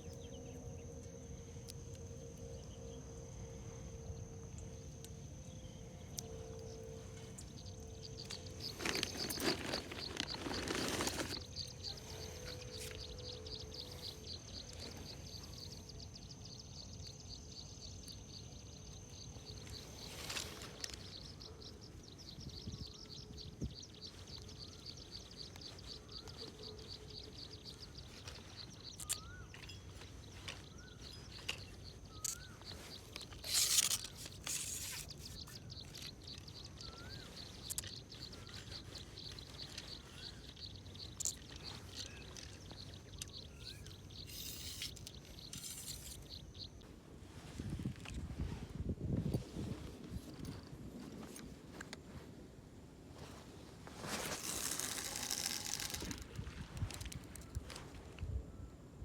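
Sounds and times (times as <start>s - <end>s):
insects trilling: 0.0s - 46.8s, 53.2s - 58.7s
bird chirps: 5.6s - 46.8s
rustling: 8.2s - 13.2s, 24.1s - 46.5s, 53.2s - 58.2s.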